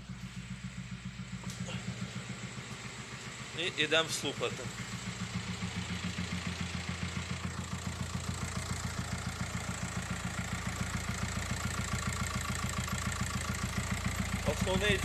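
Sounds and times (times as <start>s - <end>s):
diesel engine idling with knock: 0.0s - 15.0s.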